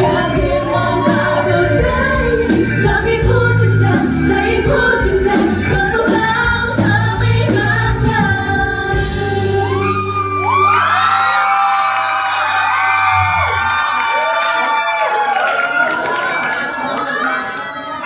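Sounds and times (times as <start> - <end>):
band playing with a beat: 0.0 - 10.6
women singing pop song: 0.0 - 10.7.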